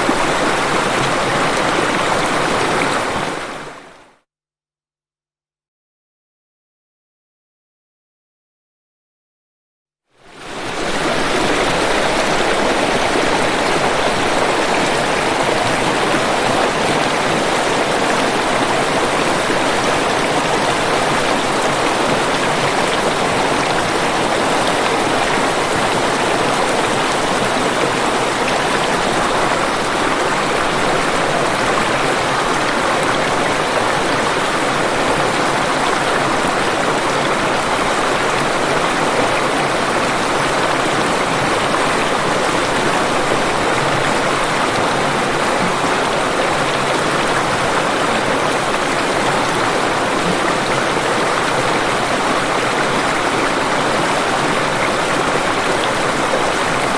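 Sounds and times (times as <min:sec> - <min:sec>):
rush of falling water: 0:00.0 - 0:04.0, 0:10.2 - 0:56.9.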